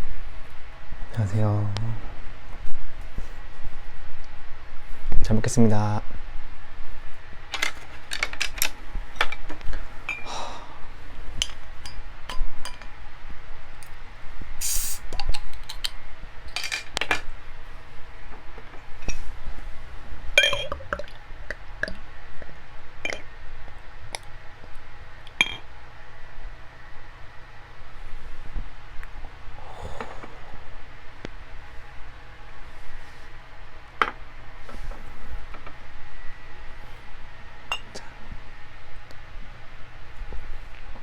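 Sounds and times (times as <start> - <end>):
short hiss: 14.6 - 15.1
utensils and dishes clinking: 20.4 - 20.8.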